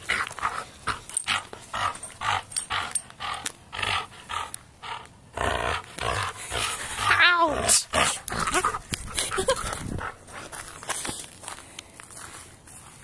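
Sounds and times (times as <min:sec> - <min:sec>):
dog play growling: 0:00.0 - 0:10.2.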